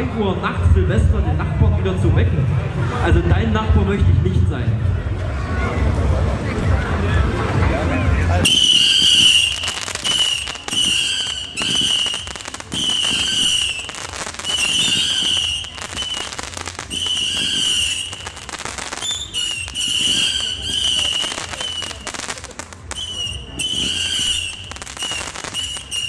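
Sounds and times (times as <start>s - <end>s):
firework crackling: 6.0s - 26.0s
shrill firework whistles: 8.4s - 22.2s, 22.8s - 26.0s.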